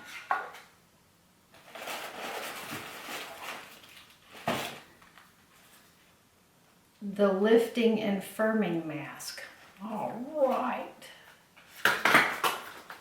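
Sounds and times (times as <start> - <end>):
paper packaging rustling: 1.5 - 6.1.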